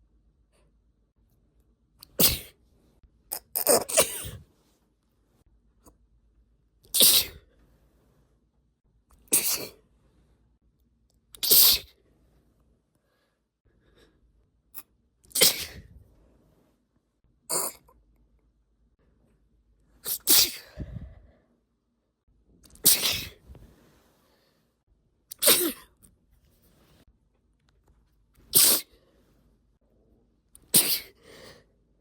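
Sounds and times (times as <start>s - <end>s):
woman sneezing: 2.1s - 2.6s, 3.6s - 4.5s, 7.0s - 7.4s, 9.3s - 9.8s, 15.3s - 16.0s, 20.1s - 21.1s, 22.8s - 23.4s, 25.4s - 25.9s, 28.5s - 28.9s, 30.7s - 31.2s.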